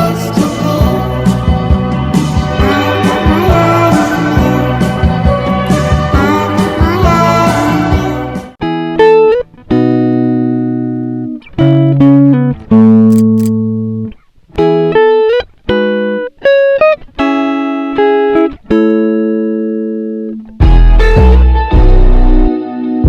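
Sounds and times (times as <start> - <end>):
solo guitar music: 8.6 - 23.0.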